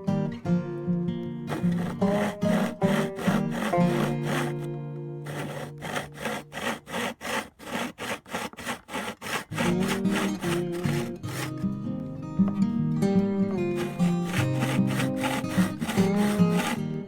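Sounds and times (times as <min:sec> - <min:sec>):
background music: 0:00.0 - 0:06.8, 0:09.5 - 0:17.0
hand tool strokes on wood: 0:01.5 - 0:11.6, 0:13.7 - 0:17.0.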